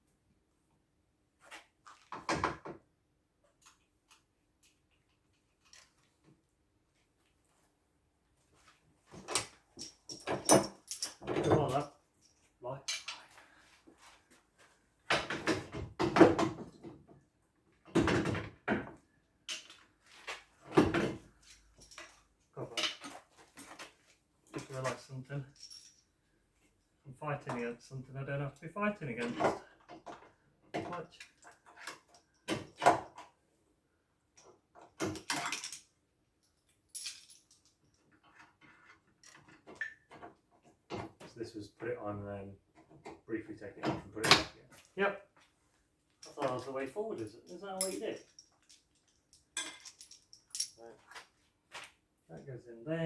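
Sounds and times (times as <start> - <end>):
metal parts knocking and clinking: 9.2 - 13.2, 25.5 - 26.1, 35.0 - 35.9, 36.9 - 38.1, 46.2 - 50.8.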